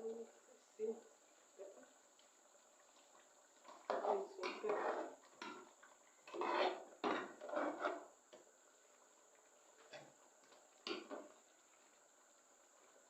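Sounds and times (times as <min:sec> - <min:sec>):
metal spoon scraping a pot: 0:03.8 - 0:05.6, 0:06.2 - 0:08.1.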